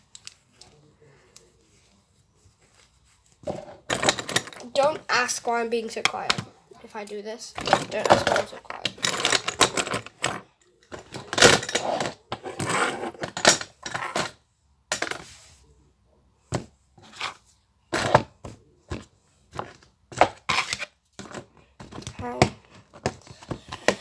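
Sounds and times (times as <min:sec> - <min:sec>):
rustling: 0:00.0 - 0:05.2
plastic toys clacking and rattling: 0:03.5 - 0:15.3.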